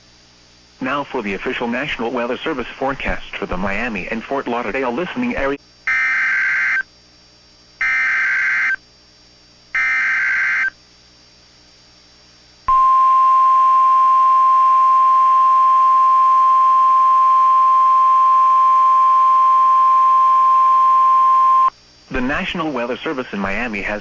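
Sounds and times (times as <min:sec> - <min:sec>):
steady warning alarm tone: 0:05.9 - 0:06.9, 0:07.8 - 0:08.8, 0:09.8 - 0:10.8.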